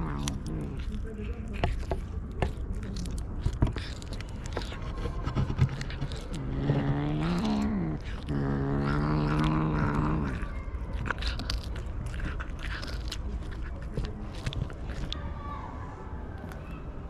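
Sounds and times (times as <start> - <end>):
cat crunching food: 0.0 - 15.2
cat yowling: 2.8 - 15.1.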